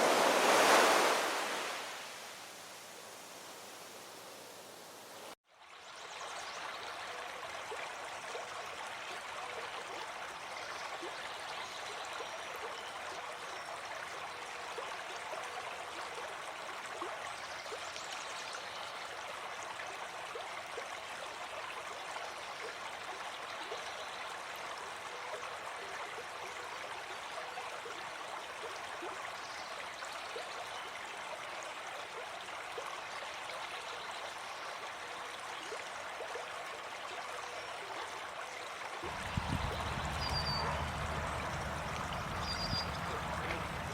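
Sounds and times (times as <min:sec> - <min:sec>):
running water: 0:34.3 - 0:43.9.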